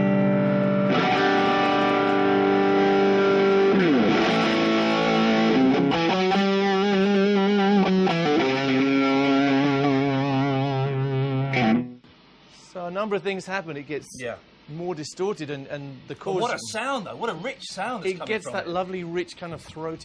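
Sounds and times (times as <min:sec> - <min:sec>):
distorted electric guitar chords: 0:00.0 - 0:12.4.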